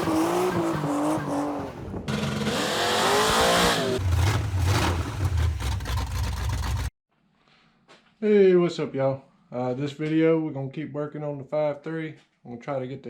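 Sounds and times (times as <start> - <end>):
car engine revving: 0.0 - 6.9
deep engine rumble: 2.1 - 6.9.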